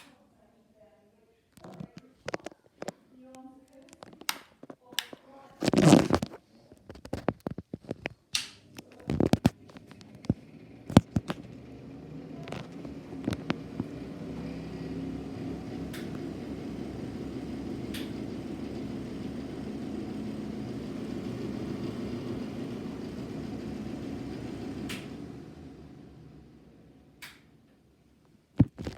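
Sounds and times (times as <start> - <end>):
clicks: 7.0 - 26.3, 27.2 - 28.9
exhaust fan humming: 8.3 - 28.9.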